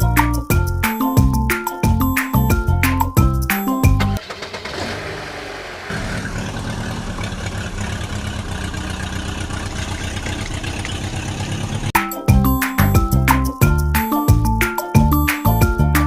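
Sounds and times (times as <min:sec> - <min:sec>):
vehicle engine pulsing: 0:03.9 - 0:12.0.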